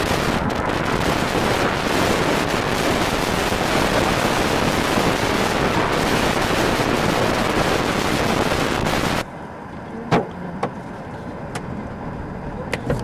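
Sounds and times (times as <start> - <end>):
storm wind and rain: 0.0 - 9.4
hailstones hitting car body: 0.2 - 9.2.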